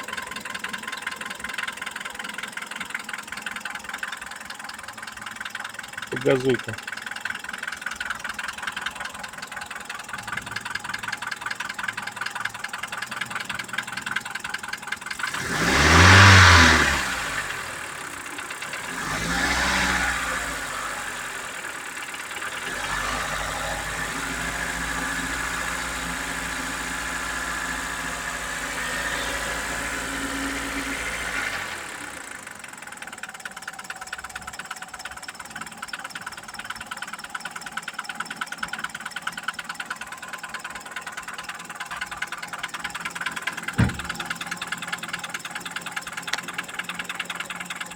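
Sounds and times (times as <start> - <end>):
engine idling with a knock: 0.0 - 15.2, 40.5 - 47.9
engine revving: 6.2 - 6.8, 15.1 - 32.6, 43.3 - 44.7.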